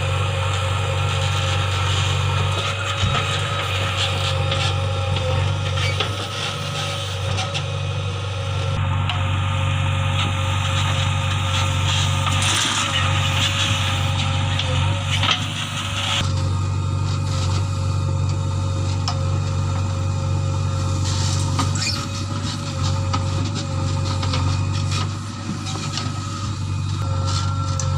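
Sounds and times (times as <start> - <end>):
diesel engine running: 0.0 - 27.9
steady whine: 0.0 - 27.9.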